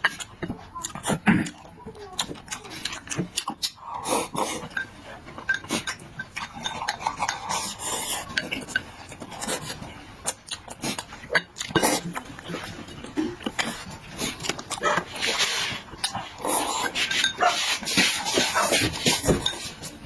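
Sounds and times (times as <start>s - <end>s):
chewing and mouth sounds: 0.0s - 20.0s
utensils clicking against dishes: 2.2s - 9.8s, 14.3s - 20.0s.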